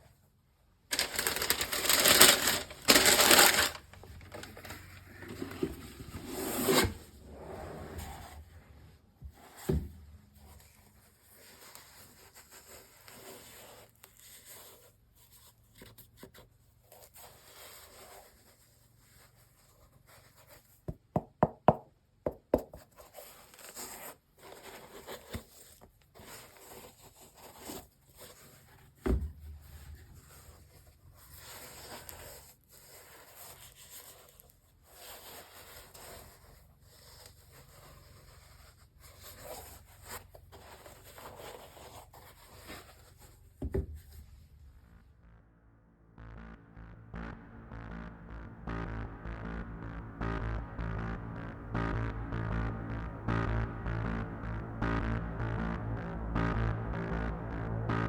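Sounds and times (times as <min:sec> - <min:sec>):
thump: 0:09.6 - 0:10.0, 0:29.0 - 0:29.6, 0:43.6 - 0:44.3.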